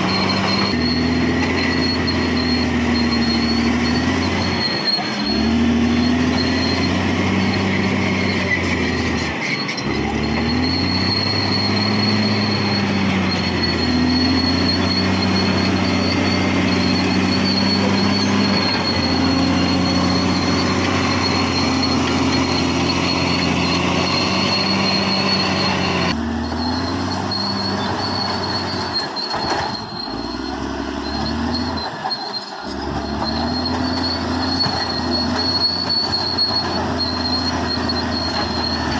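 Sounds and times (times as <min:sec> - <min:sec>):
bulldozer diesel engine: 0:00.0 - 0:38.9
steel tracks squealing and clattering: 0:00.0 - 0:38.9.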